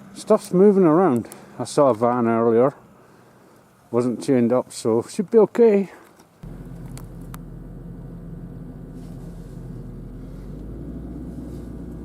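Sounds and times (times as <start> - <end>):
car engine running: 6.4 - 12.0.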